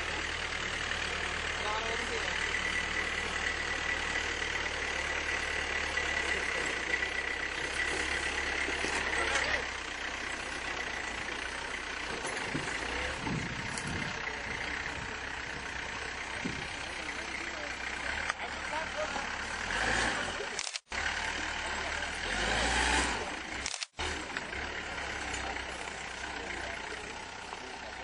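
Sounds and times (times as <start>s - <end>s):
engine low rumble: 0.0s - 28.0s.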